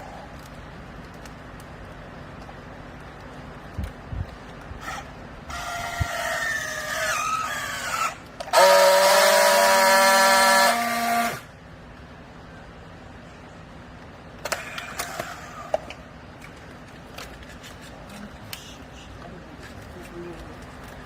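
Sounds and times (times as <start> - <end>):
hydraulic baler whine: 4.8 - 11.6.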